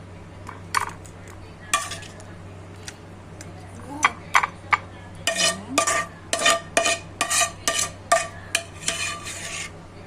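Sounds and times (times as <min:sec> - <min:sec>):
metal utensil clanging in wok: 0:01.8 - 0:02.1, 0:05.3 - 0:09.6.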